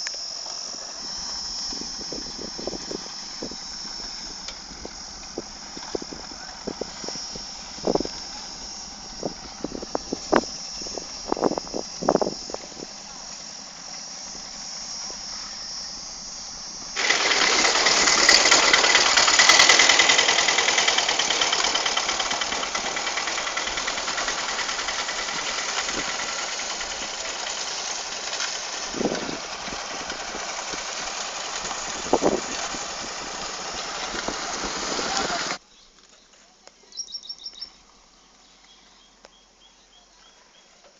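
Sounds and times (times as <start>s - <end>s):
high insect-like hum: 0.0s - 17.0s
construction machinery engine: 0.0s - 35.6s.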